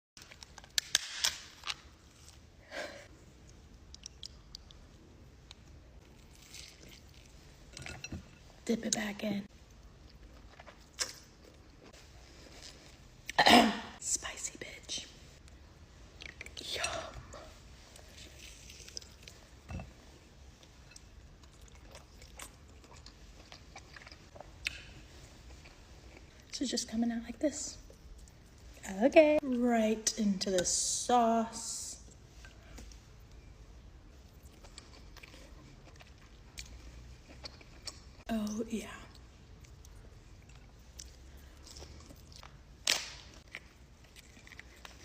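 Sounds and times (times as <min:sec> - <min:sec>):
soft wet chewing: 0:02.1 - 0:08.0, 0:15.4 - 0:26.5, 0:34.1 - 0:38.3, 0:39.1 - 0:45.0.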